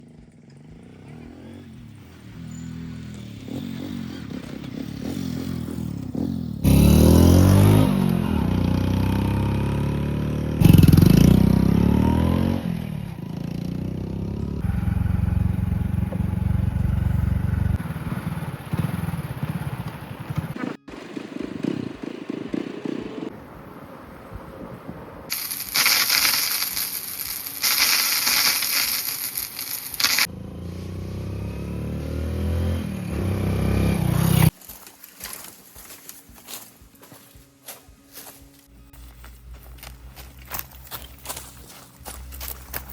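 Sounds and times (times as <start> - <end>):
vehicle engine running: 0.0 - 24.4, 29.2 - 34.6, 38.7 - 42.9
hiss: 25.3 - 30.3.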